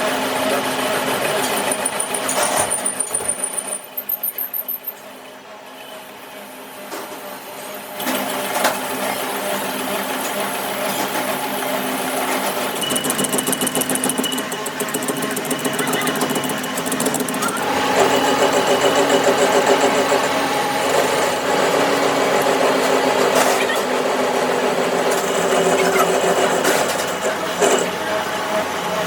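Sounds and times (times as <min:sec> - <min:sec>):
small machine clattering: 0:01.3 - 0:05.0, 0:08.0 - 0:20.2.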